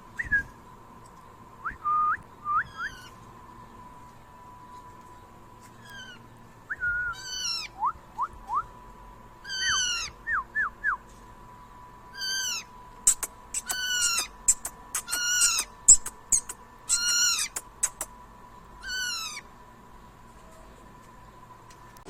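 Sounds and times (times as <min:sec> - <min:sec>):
loud falling bird calls: 0:02.6 - 0:03.3, 0:05.6 - 0:07.9, 0:09.4 - 0:10.2, 0:12.2 - 0:17.6, 0:18.8 - 0:19.5
sharp bird chirps: 0:09.5 - 0:10.1, 0:12.2 - 0:18.1.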